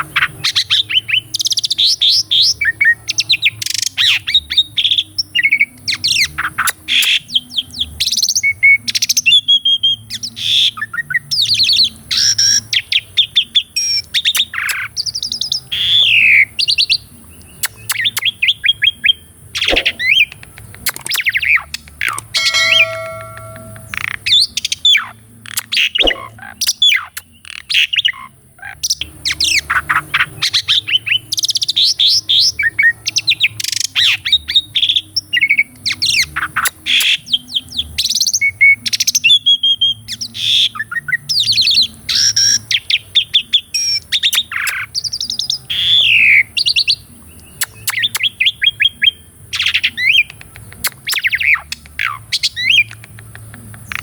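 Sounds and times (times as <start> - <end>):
starling singing: 21.2 - 24.1.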